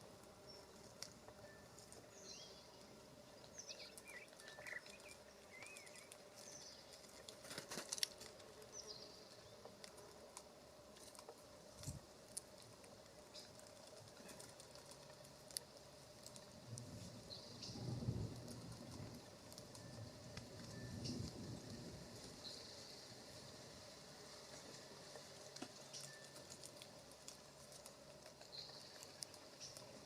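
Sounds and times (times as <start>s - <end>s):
small songbirds chirping: 0.0s - 30.0s.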